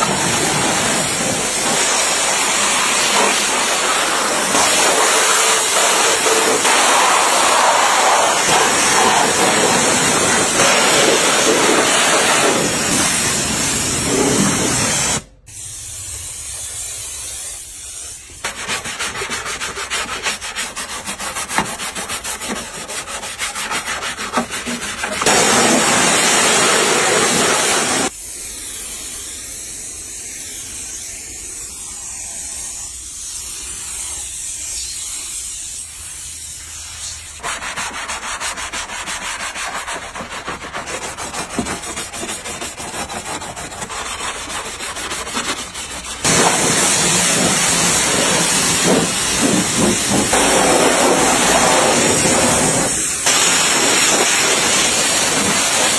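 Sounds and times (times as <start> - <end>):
loud rushing hiss: 0.0 - 18.4, 25.3 - 36.9, 46.0 - 55.9
sanding scraping strokes: 16.2 - 28.1, 31.7 - 55.9.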